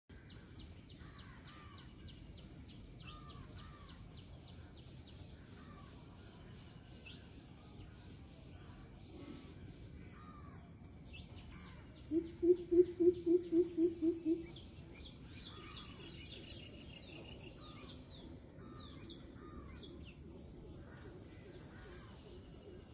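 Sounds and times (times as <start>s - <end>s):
lower curving bird calls: 3.0s - 7.8s, 11.2s - 20.1s.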